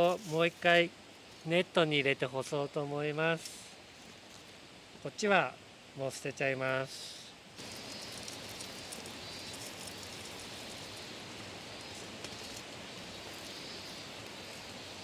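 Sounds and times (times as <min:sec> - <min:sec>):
outdoor background hiss: 0:00.0 - 0:15.0.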